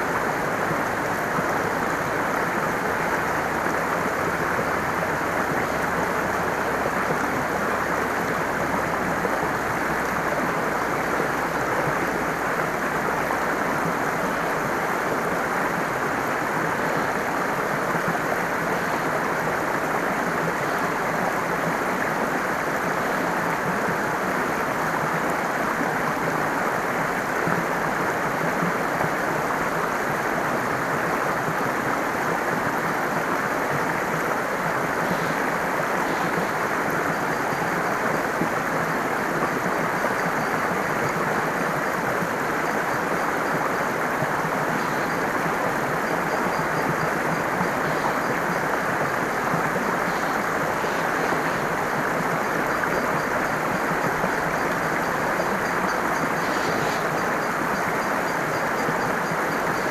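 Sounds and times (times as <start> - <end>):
stream water rushing and splashing: 0.0 - 59.9.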